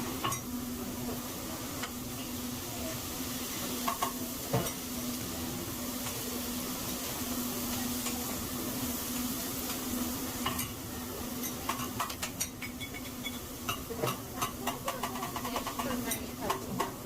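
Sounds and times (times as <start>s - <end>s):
food sizzling on griddle: 0.0s - 17.0s.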